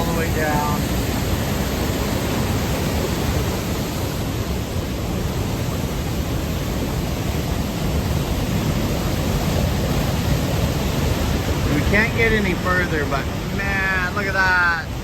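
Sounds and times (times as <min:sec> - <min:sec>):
waterfall roaring: 0:00.0 - 0:15.0.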